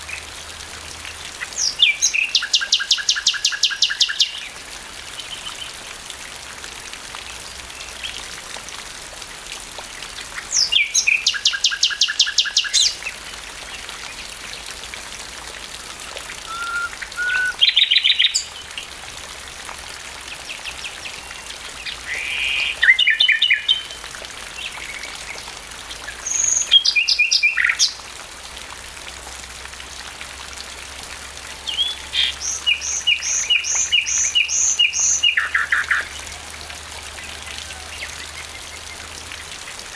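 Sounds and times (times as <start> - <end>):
light rain hiss: 0.0 - 39.9
nightingale singing: 16.5 - 18.6, 31.6 - 36.2.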